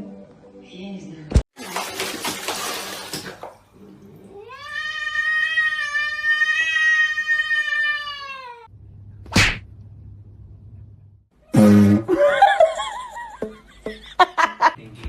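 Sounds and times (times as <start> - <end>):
cat meowing: 4.3 - 8.7.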